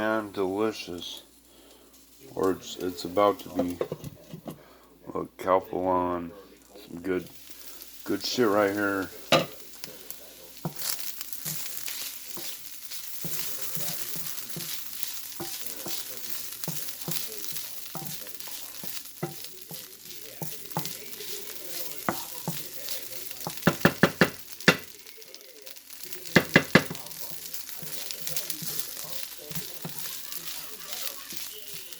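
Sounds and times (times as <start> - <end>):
food sizzling in a frying pan: 0.0 - 4.9, 5.6 - 31.9
utensil clicking against pan: 9.3 - 24.9, 25.8 - 31.9.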